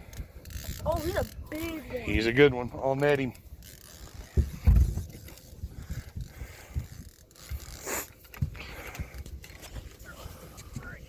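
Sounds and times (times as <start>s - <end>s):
low thumps and knocks on boat: 4.3s - 5.1s.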